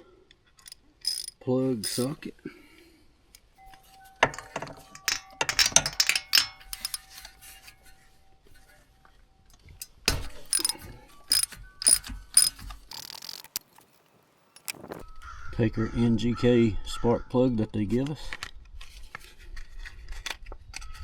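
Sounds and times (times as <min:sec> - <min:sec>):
metal clinks: 0:00.6 - 0:02.2, 0:03.6 - 0:08.8, 0:09.5 - 0:13.4
ratchet wrench clicking: 0:00.6 - 0:02.2, 0:05.0 - 0:07.2, 0:09.8 - 0:13.6, 0:14.6 - 0:14.8.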